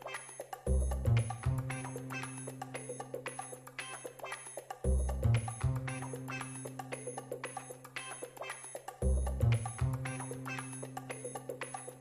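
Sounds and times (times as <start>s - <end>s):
steady percussive beat: 0.0s - 3.6s, 4.7s - 7.9s.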